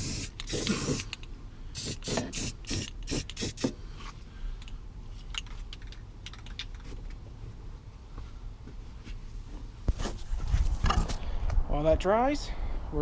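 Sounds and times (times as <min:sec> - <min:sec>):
aerosol can spraying bursts: 0:00.0 - 0:03.8.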